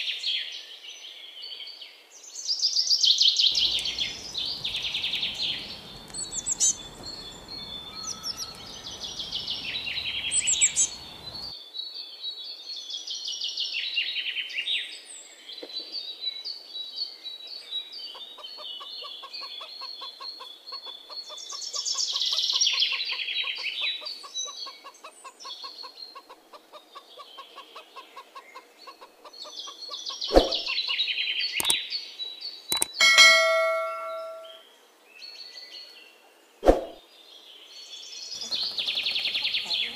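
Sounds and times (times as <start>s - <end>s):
songbirds trilling: 3.5s - 11.5s, 32.7s - 34.6s, 38.3s - 39.9s
sharp clicks: 32.7s - 33.0s.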